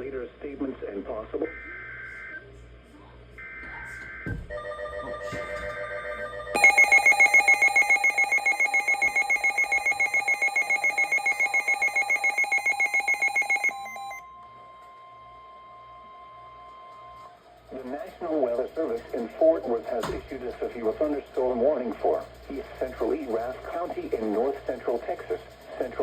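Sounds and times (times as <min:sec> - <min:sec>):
pulsing electronic alert beeps: 0:06.6 - 0:14.2
screechy digital data tones: 0:06.6 - 0:14.2.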